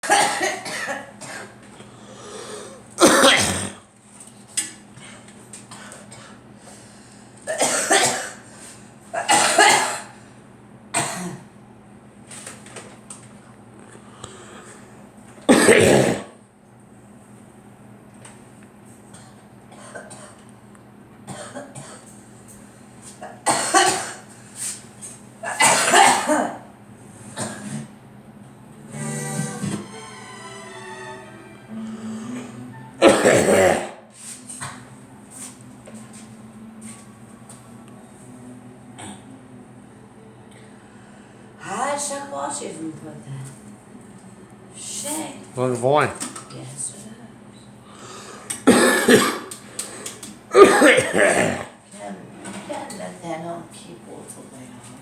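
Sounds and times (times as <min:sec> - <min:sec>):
girl coughing: 0:00.0 - 0:01.6, 0:03.0 - 0:03.8, 0:07.5 - 0:08.4, 0:09.2 - 0:10.2, 0:11.0 - 0:11.4, 0:15.5 - 0:16.4, 0:21.3 - 0:22.1, 0:23.2 - 0:24.2, 0:25.4 - 0:26.6, 0:33.0 - 0:34.0, 0:48.6 - 0:49.5, 0:50.5 - 0:51.8.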